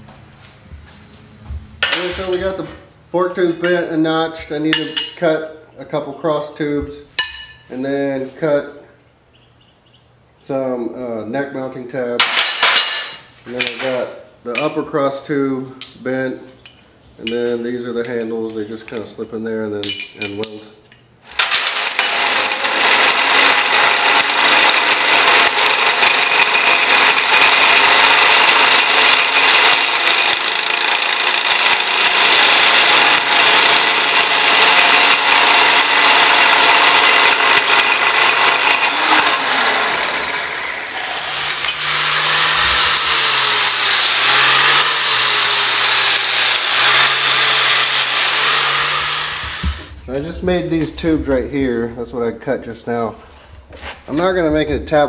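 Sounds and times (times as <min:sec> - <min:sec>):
power saw cutting steel: 0:21.2 - 0:50.4.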